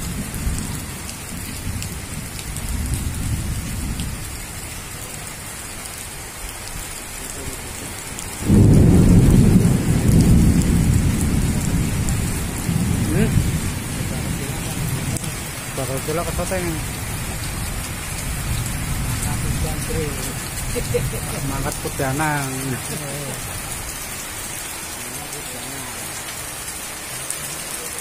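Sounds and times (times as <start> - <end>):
heavy rain falling: 0.0 - 28.0.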